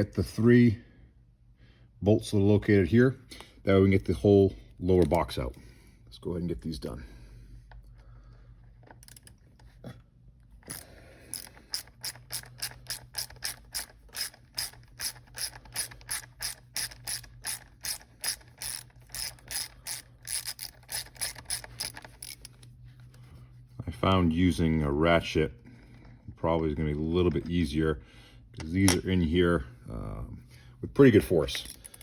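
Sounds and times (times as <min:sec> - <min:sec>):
hand ratchet clicking: 0:08.8 - 0:09.7, 0:10.6 - 0:22.7.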